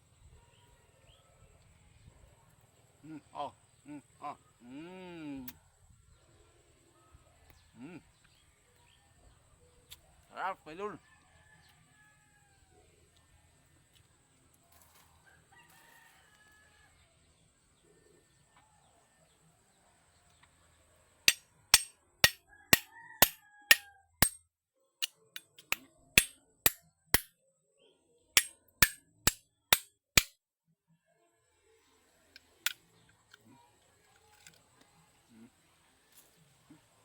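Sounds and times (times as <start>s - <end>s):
rooster crowing faintly: 10.9s - 13.0s, 14.8s - 17.2s, 22.3s - 24.1s.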